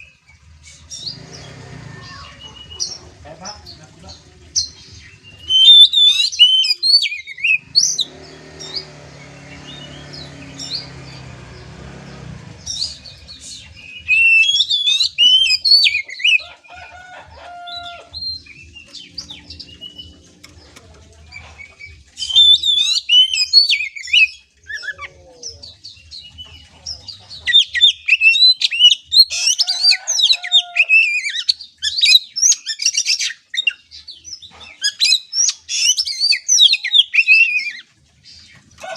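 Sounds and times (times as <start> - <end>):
bird singing chattering phrases: 0.0 - 38.7.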